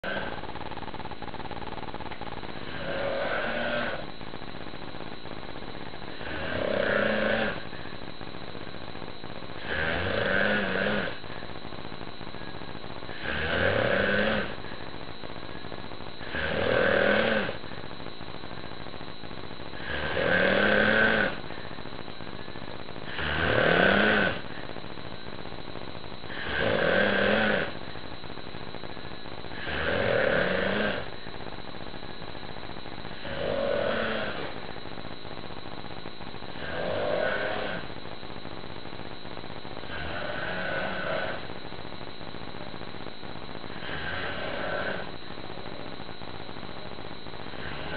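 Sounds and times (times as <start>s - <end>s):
man snoring: 0.0s - 0.4s, 2.6s - 4.0s, 6.2s - 7.6s, 9.6s - 11.2s, 13.1s - 14.6s, 16.2s - 17.6s, 19.8s - 21.5s, 23.1s - 24.4s, 26.3s - 27.7s, 29.6s - 31.1s, 33.2s - 34.6s, 36.6s - 37.9s, 39.8s - 41.5s, 43.7s - 45.2s, 47.5s - 47.9s.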